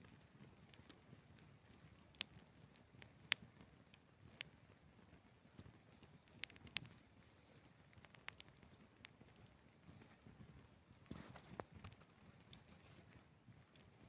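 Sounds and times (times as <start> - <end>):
campfire crackling and popping: 0.5 - 12.7.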